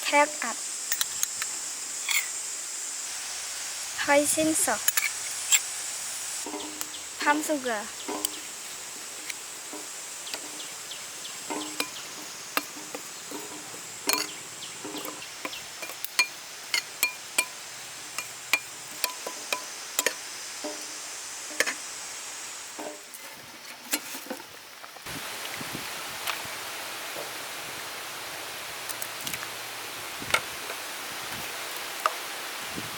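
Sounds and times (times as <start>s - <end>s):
insects buzzing: 0.0s - 32.9s
steady hiss: 0.0s - 32.9s
utensils and bowls clinking: 6.4s - 8.5s, 9.6s - 20.9s.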